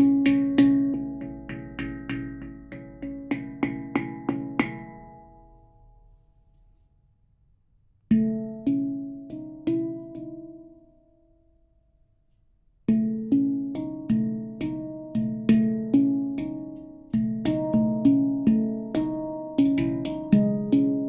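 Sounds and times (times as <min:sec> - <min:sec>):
handpan notes ringing: 0:00.0 - 0:05.7, 0:08.1 - 0:11.0, 0:12.9 - 0:21.0.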